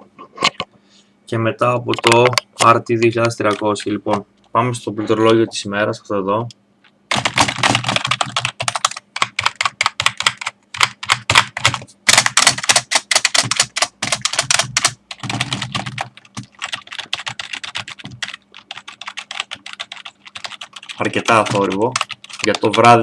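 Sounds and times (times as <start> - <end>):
fast keyboard typing: 7.1 - 23.0.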